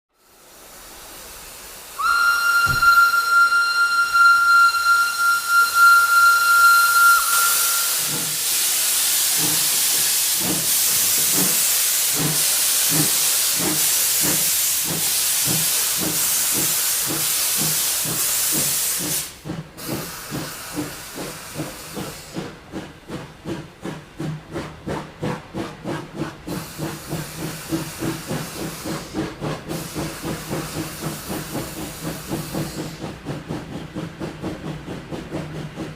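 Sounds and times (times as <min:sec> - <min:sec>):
loud steam hiss: 0:00.2 - 0:35.9
locomotive exhaust chuffs: 0:01.5 - 0:35.9
steam locomotive whistle: 0:02.0 - 0:08.6.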